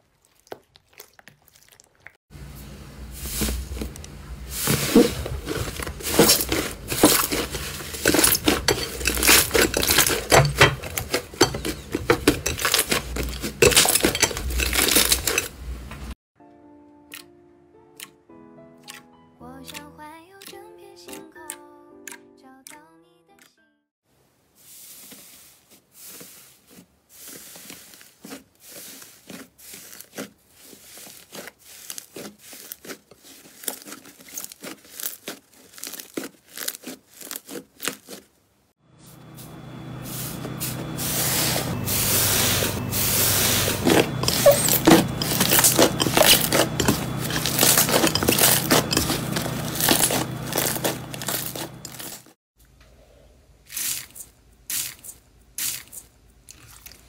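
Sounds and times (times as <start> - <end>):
slime crackling and popping: 29.2 - 38.3.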